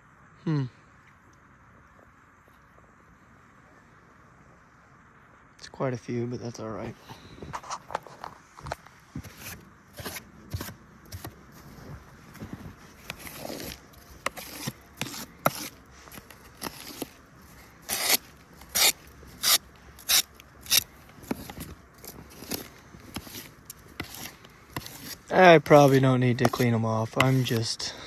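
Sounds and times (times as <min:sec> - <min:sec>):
snow scraped off hive lids: 0:06.8 - 0:28.0.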